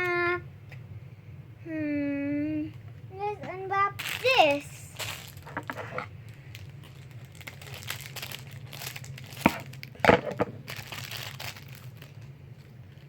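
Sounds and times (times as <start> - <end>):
plastic wrapping crinkling and tearing: 4.0 - 13.0.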